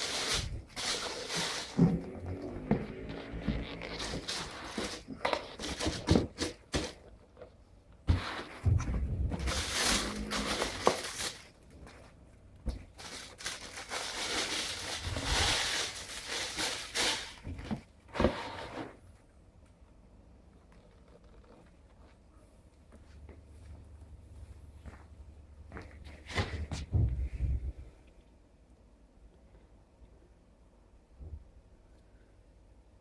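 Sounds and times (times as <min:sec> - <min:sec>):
paper rustling and crinkling: 0:00.0 - 0:07.5, 0:08.1 - 0:19.0.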